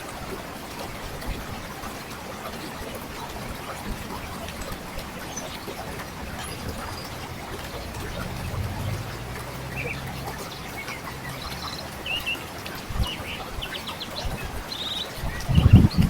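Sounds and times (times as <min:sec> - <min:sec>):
river water flowing: 0:00.0 - 0:16.0
small birds chirping: 0:02.6 - 0:16.0
low thumps: 0:06.1 - 0:11.6.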